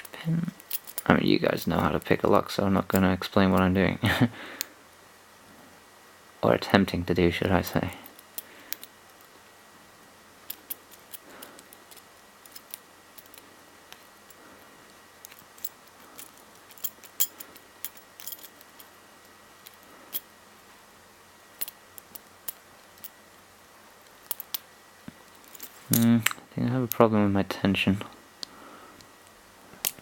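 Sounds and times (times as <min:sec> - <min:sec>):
lock pick clicking and scraping: 0:10.5 - 0:14.1.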